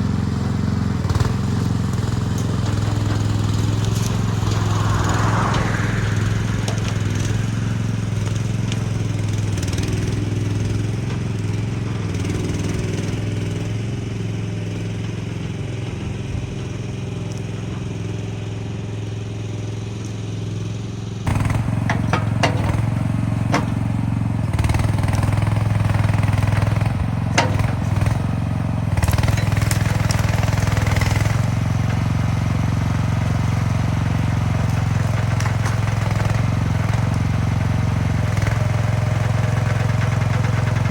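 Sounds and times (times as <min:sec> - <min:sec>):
loader engine running: 0:00.0 - 0:40.9.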